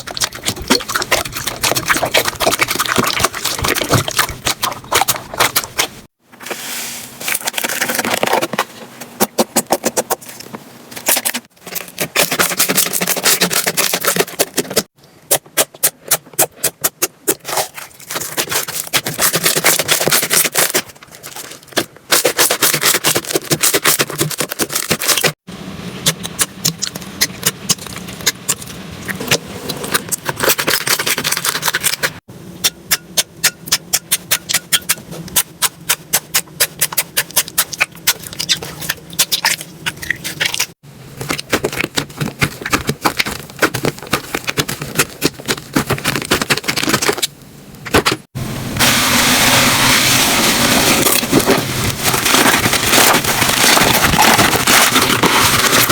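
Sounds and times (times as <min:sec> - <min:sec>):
slime popping and crackling: 0:00.0 - 0:06.1, 0:49.8 - 0:55.9.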